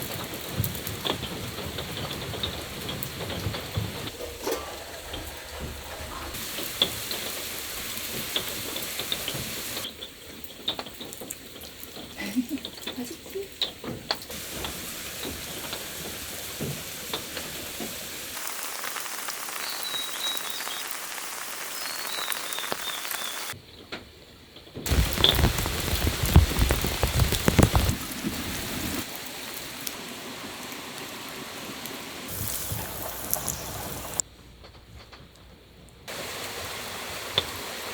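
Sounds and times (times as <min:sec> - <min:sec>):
steady rain falling: 0:00.0 - 0:23.6, 0:24.9 - 0:34.2, 0:36.0 - 0:37.9
raindrops ticking sharply: 0:14.3 - 0:23.6, 0:24.9 - 0:34.2.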